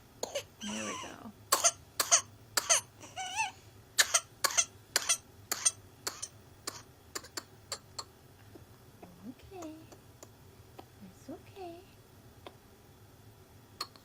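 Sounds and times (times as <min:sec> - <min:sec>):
child coughing: 0:00.2 - 0:02.9, 0:04.0 - 0:07.9.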